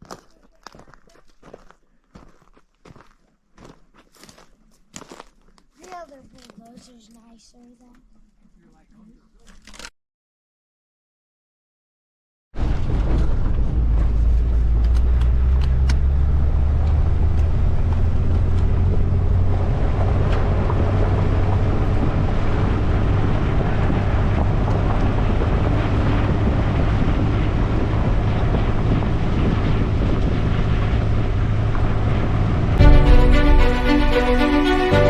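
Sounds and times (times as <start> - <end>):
vehicle engine running: 12.6 - 35.0.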